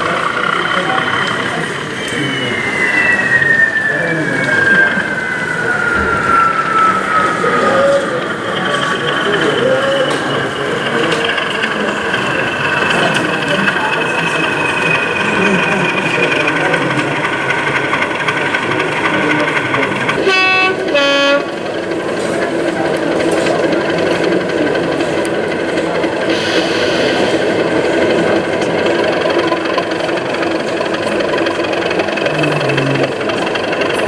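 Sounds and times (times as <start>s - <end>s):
steady busy din: 0.0s - 34.0s
two-tone train horn: 20.2s - 21.8s.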